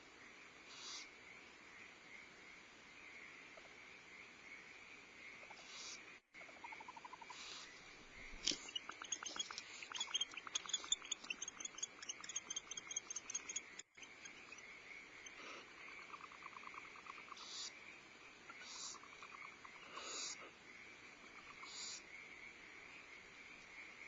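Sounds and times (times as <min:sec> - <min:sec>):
faint owl chirps and clicks: 0:00.7 - 0:01.1, 0:05.4 - 0:17.7, 0:18.5 - 0:20.4, 0:21.3 - 0:22.0
owl hisses: 0:00.7 - 0:01.1, 0:05.5 - 0:06.0, 0:07.2 - 0:07.8, 0:17.3 - 0:17.7, 0:18.5 - 0:19.1, 0:19.8 - 0:20.5, 0:21.6 - 0:22.0.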